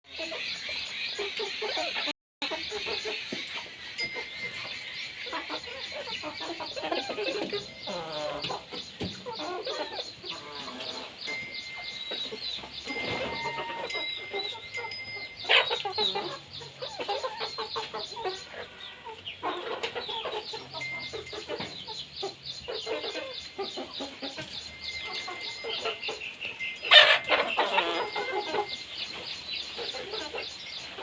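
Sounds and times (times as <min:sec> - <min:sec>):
chickens clucking and cheeping: 0:00.1 - 0:31.0.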